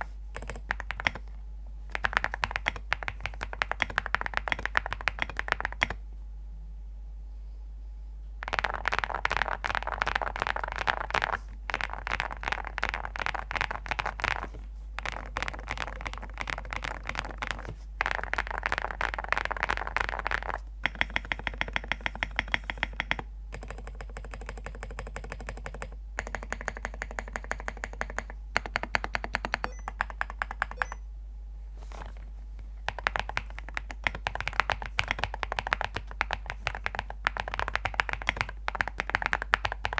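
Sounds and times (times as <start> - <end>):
mechanical keyboard typing: 0.0 - 1.2, 1.9 - 6.0, 8.4 - 31.0, 32.9 - 39.9.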